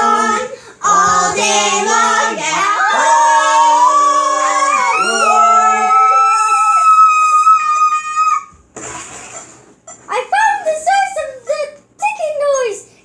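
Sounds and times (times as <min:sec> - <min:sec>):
children singing held notes: 0:00.0 - 0:04.9.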